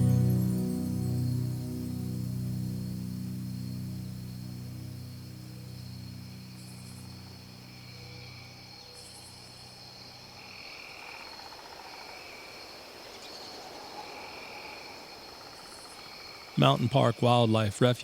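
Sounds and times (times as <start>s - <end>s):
low background music: 0.0s - 8.4s
insects trilling: 0.1s - 17.3s
pulsed insect or frog calls: 1.9s - 12.5s.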